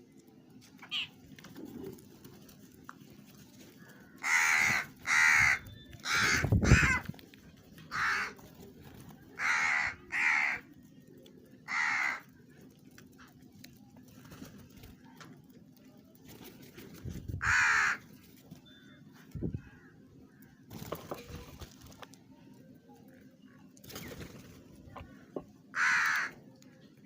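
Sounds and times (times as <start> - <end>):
crow cawing: 3.8 - 7.0, 7.9 - 8.4, 9.4 - 10.7, 11.6 - 12.3, 17.4 - 18.1, 25.7 - 26.4.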